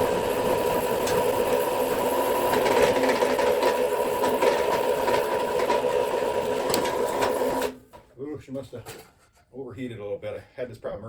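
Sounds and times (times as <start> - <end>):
electric motor whine: 0.0 - 7.8.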